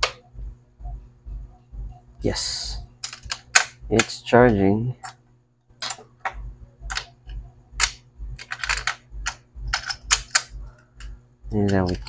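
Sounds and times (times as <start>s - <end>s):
small tools clicking and tapping: 3.0s - 4.2s, 5.8s - 12.0s.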